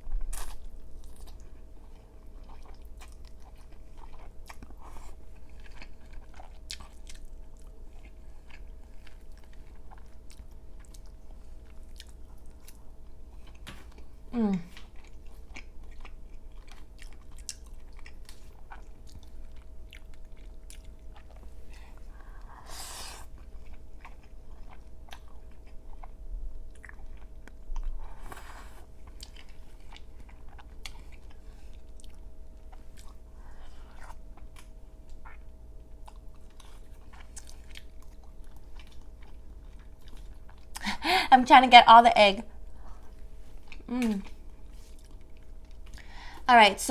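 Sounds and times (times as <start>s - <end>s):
breathy noises: 40.8s - 41.4s.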